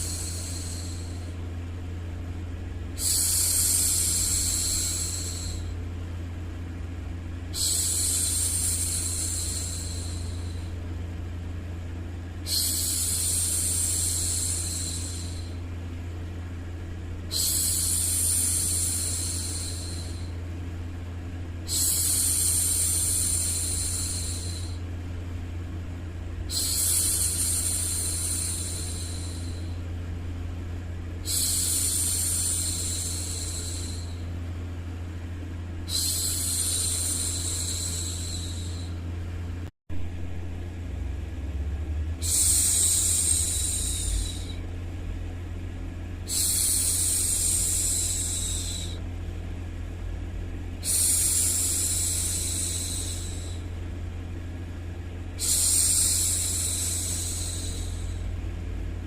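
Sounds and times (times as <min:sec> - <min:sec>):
low white-noise rumble: 0:00.0 - 0:59.0
woman shushing: 0:35.9 - 0:39.0, 0:42.2 - 0:44.6, 0:46.3 - 0:49.0, 0:55.4 - 0:58.3.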